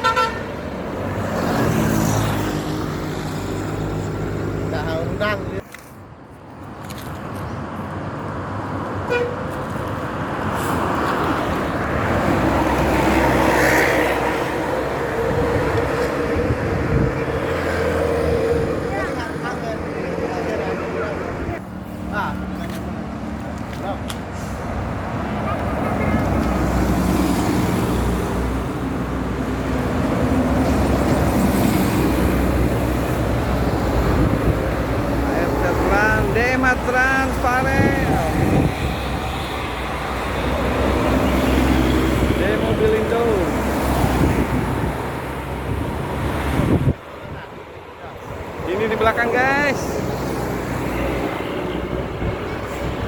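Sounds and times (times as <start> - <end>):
bus driving past: 7.7 - 23.6, 24.2 - 53.0
short horn toot: 9.1 - 9.5.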